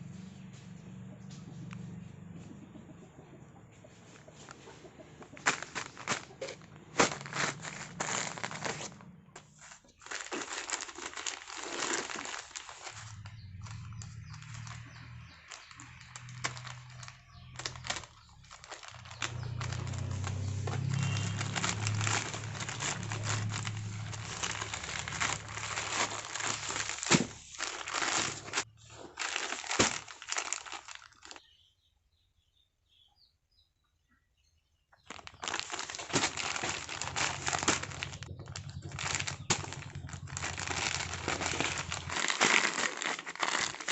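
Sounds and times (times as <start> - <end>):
detergent packaging crinkling: 5.3 - 31.4, 35.1 - 43.9.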